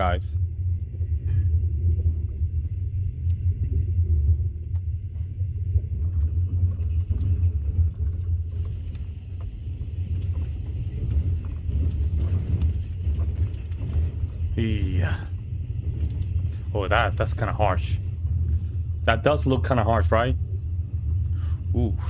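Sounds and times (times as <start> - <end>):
train rumbling: 0.0 - 22.0.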